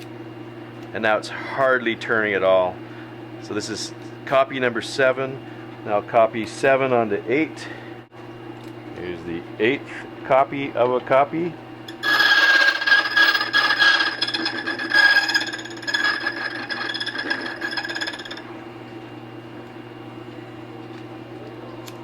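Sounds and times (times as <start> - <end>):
machine motor hum: 11.6 - 20.7
ringing whine: 11.8 - 18.6
cutter wheel grinding key: 11.9 - 18.5.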